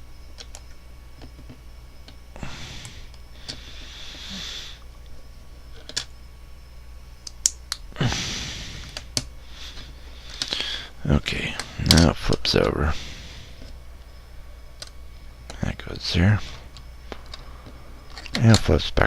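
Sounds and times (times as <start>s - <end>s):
steady low hum: 0.0s - 19.0s
soft hissing: 2.4s - 5.2s.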